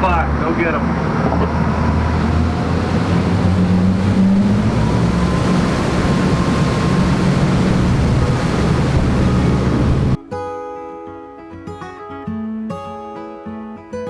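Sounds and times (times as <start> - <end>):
boat engine running hard: 0.0 - 10.2
rush of wind and water: 0.0 - 10.2.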